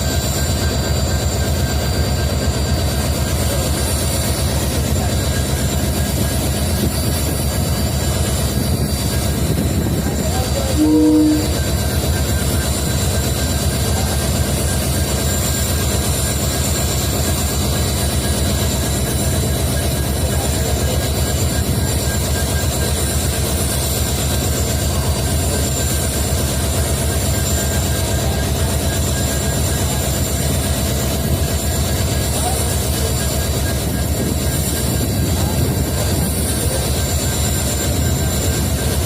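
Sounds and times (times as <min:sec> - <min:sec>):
diesel locomotives idling: 0:00.0 - 0:39.0
brief loud tone: 0:10.1 - 0:12.4.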